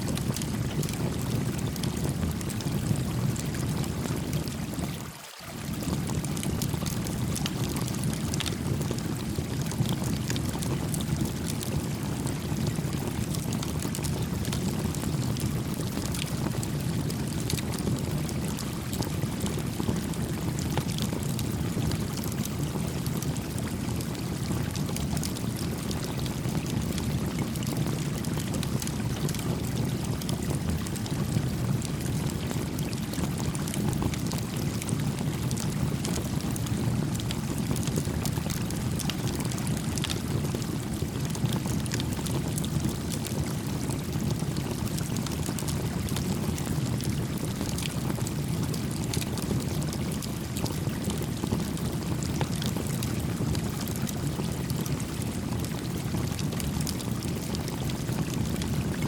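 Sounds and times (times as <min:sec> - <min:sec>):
campfire crackling and popping: 0:00.1 - 0:05.0, 0:05.7 - 0:59.0
stream flowing: 0:04.9 - 0:05.8.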